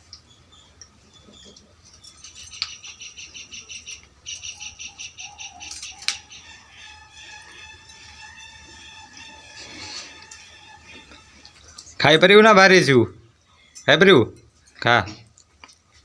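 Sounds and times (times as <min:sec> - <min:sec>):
bird chirping rapidly: 0:00.2 - 0:09.6
high bird warbling: 0:00.4 - 0:12.0.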